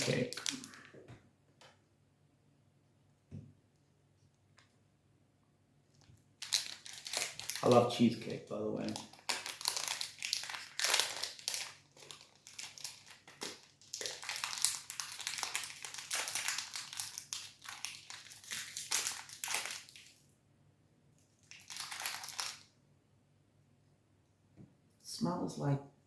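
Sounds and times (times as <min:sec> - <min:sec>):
plastic wrapper crinkling: 0:00.0 - 0:01.0, 0:05.9 - 0:20.2, 0:21.4 - 0:22.8.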